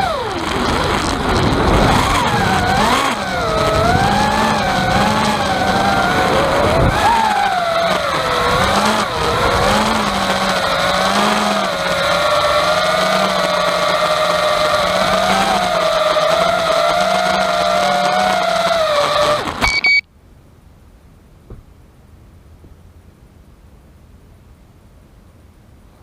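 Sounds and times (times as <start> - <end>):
rattling noise: 0.0 - 19.6
drone motors whining: 0.0 - 20.0.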